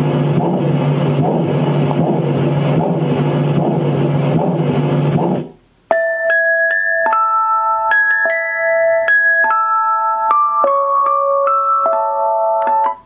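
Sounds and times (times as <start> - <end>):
low white noise with hum: 0.0 - 13.0
music-box lullaby melody: 5.9 - 13.0.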